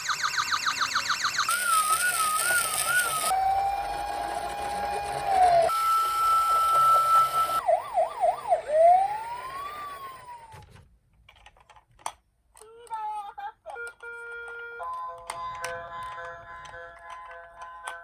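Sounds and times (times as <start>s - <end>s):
electronic police siren: 0.0s - 10.6s.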